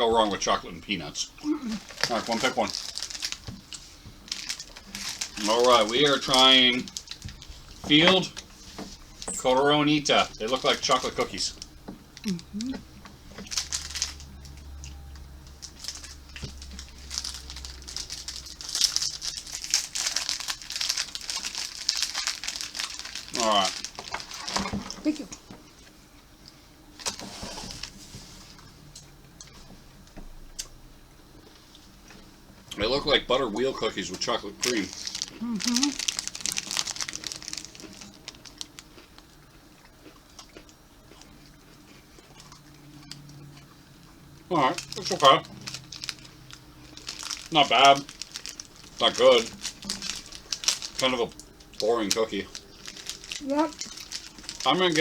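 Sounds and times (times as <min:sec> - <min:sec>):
chewing cookies: 0:01.4 - 0:27.3, 0:34.0 - 0:55.0
plastic wrapper crinkling: 0:01.6 - 0:25.4, 0:27.0 - 0:28.7, 0:34.0 - 0:39.4, 0:44.4 - 0:55.0.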